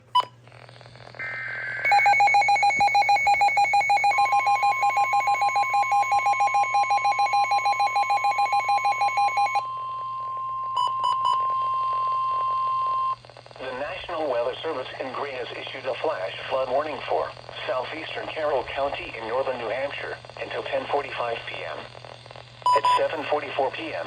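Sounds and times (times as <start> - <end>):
steady warning alarm tone: 1.8 - 10.0
rapid two-tone beeps: 1.9 - 9.6, 22.6 - 23.1.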